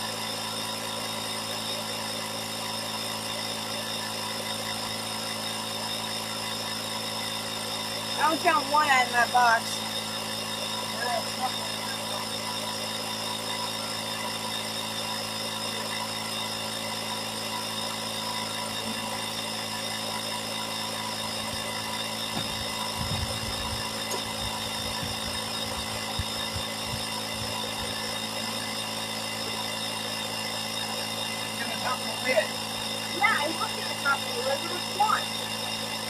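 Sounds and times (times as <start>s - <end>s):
machine humming: 0.0s - 36.0s
low bumps and rumbles: 22.3s - 27.9s.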